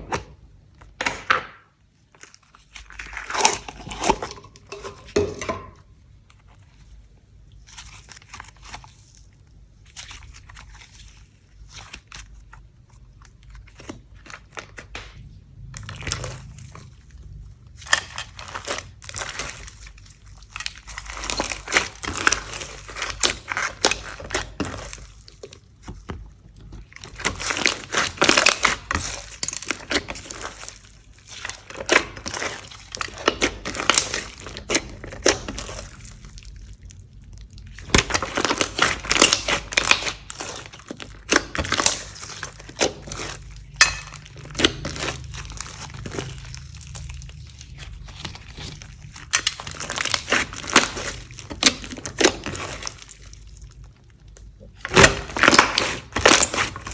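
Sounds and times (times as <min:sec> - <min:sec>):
hands squishing slime: 0:06.2 - 0:56.9.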